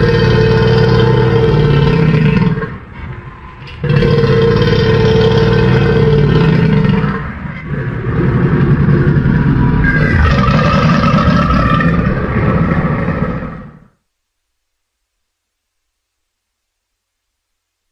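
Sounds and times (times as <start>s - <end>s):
creature roaring: 3.8s - 13.9s.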